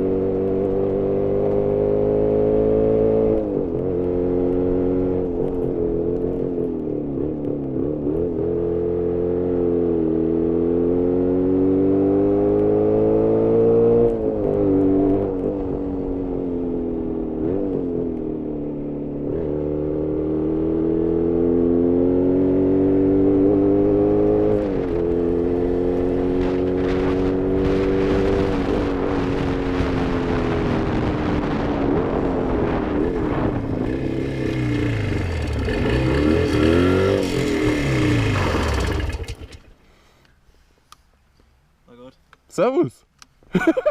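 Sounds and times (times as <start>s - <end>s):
two-stroke motorcycle engine: 33.1s - 39.8s.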